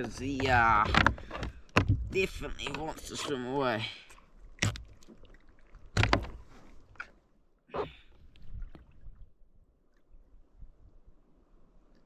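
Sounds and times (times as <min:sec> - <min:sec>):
water splashing: 0:00.0 - 0:07.2.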